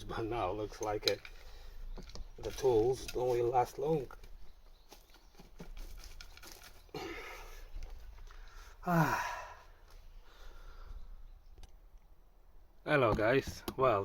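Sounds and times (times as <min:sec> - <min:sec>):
breathy exhale: 0:08.4 - 0:11.0
man groaning: 0:08.8 - 0:09.6.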